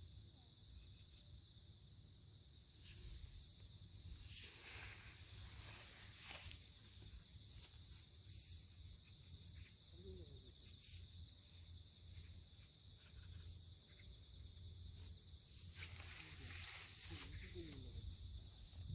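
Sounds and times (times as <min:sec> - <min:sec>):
steady high hiss: 0:02.0 - 0:12.7, 0:15.2 - 0:18.8.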